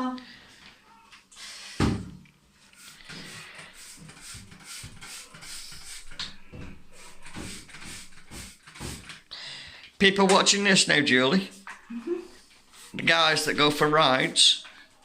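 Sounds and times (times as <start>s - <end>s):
quick rubbing strokes scrubbing bicycle: 2.7s - 6.2s, 6.9s - 9.1s.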